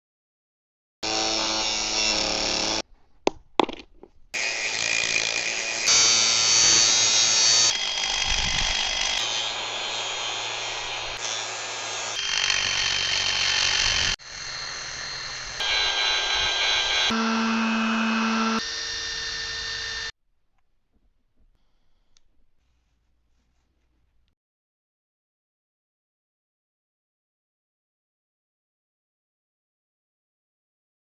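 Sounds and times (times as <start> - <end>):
power tools running: 1.0 - 2.8, 4.4 - 20.1.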